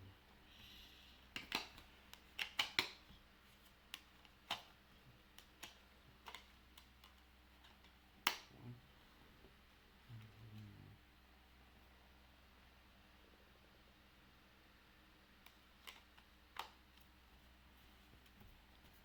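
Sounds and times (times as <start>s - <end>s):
sharp clicks and taps: 1.3s - 3.2s.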